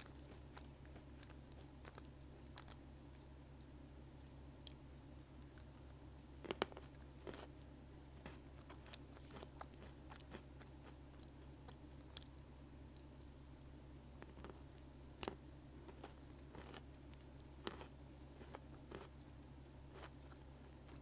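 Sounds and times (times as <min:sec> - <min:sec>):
steady low hum: 0:00.0 - 0:21.0
crunching biscuit sticks: 0:04.6 - 0:21.0.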